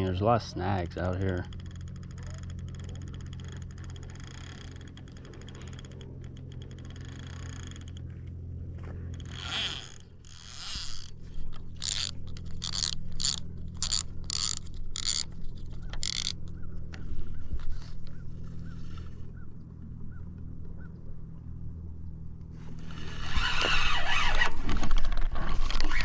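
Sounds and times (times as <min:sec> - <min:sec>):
fishing reel clicking and scraping: 0:00.1 - 0:08.1, 0:09.0 - 0:17.0, 0:22.8 - 0:26.0.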